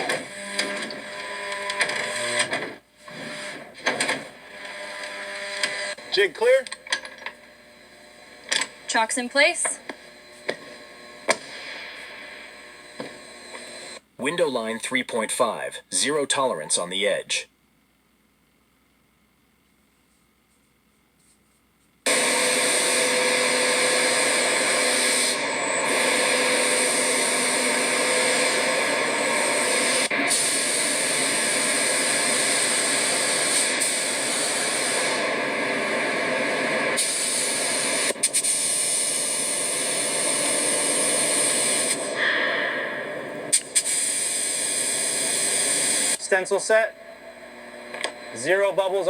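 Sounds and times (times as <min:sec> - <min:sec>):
paint spray gun hissing: 0:43.5 - 0:46.1.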